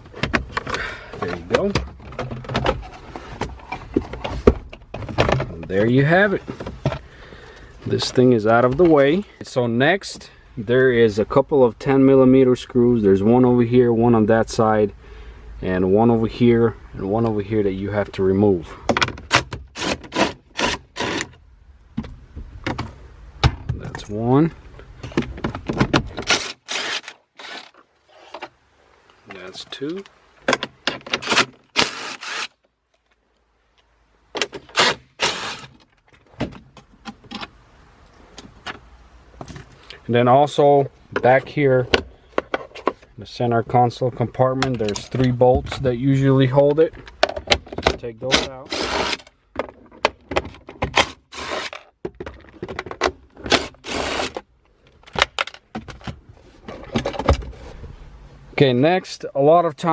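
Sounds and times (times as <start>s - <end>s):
short rasping bursts: 19.7s - 21.3s, 26.3s - 27.8s, 31.2s - 32.6s, 34.7s - 35.8s, 48.6s - 49.3s, 51.0s - 51.8s, 53.5s - 54.4s
cordless drill spinning bolts: 19.8s - 21.3s, 26.2s - 27.8s, 31.2s - 32.6s, 34.7s - 35.8s, 48.7s - 49.3s, 51.0s - 51.8s, 53.5s - 54.4s
bolts and socket clinking: 44.2s - 57.4s.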